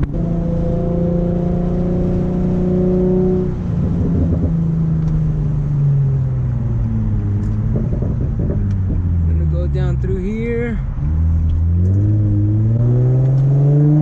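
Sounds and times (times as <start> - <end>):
car engine and exhaust: 0.0 - 14.0
exhaust pops and crackles: 4.0 - 5.3, 6.8 - 12.1.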